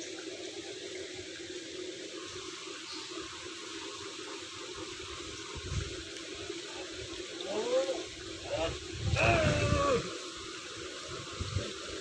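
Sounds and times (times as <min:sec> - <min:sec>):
running water: 0:00.0 - 0:12.0.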